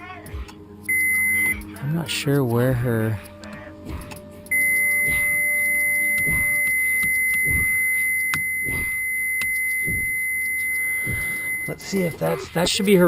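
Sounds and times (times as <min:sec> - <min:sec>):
high-pitched warning buzzer: 0:00.9 - 0:01.6, 0:04.5 - 0:12.2.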